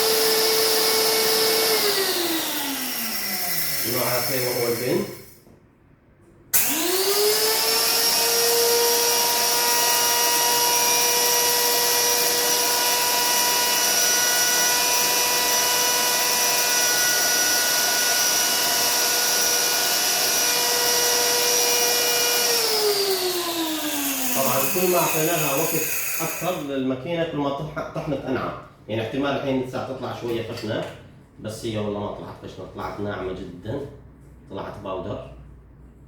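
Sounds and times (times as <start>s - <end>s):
electric grinder grinding coffee beans: 0.0s - 5.2s, 6.6s - 26.6s.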